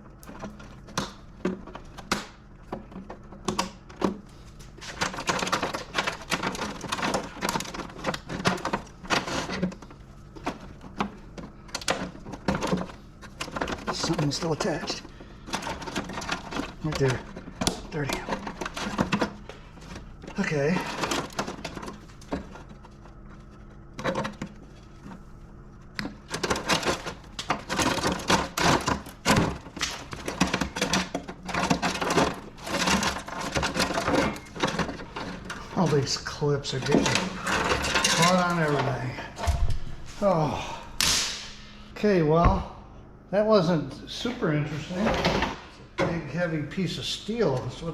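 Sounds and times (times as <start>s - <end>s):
wiring and plastic clips rattling: 0.0s - 25.2s, 25.8s - 40.3s
low steady hum: 0.0s - 47.9s
metal parts clicking and clinking: 26.0s - 39.9s.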